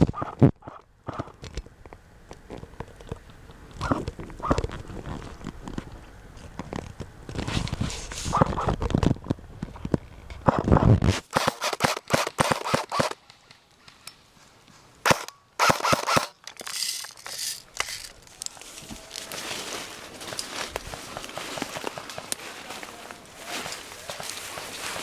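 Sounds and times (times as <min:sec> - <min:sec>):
rustling movement: 0:02.4 - 0:10.4, 0:11.0 - 0:25.0
airsoft guns firing bursts: 0:11.3 - 0:13.2, 0:15.0 - 0:16.4.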